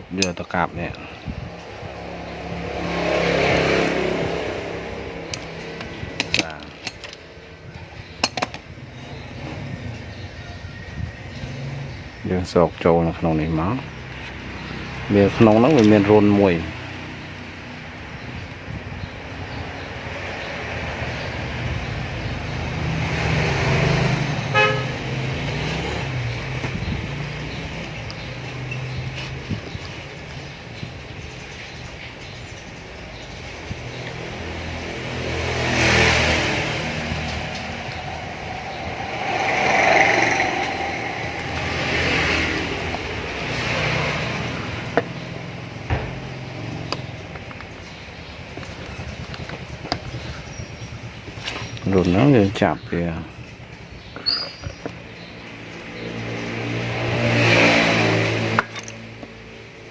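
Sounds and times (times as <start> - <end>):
motor vehicle passing by: 1.1 - 6.4, 13.8 - 51.7, 55.0 - 59.9
short horn toot: 24.5 - 25.0.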